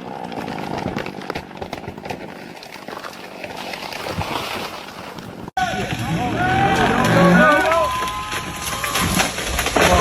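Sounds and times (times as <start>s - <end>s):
wood and branches snapping: 5.8s - 10.0s.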